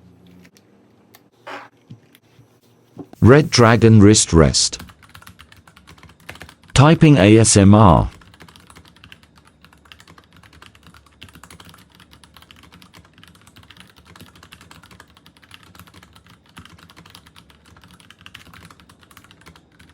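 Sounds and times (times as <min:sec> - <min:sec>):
mechanical keyboard typing: 0:04.8 - 0:06.8, 0:08.1 - 0:19.9.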